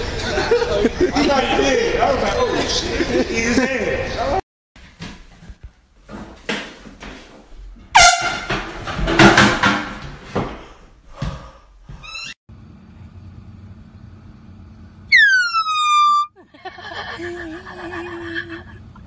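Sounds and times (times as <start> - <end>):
air horn blasting: 8.0 - 8.6
rising squeal: 15.1 - 16.3.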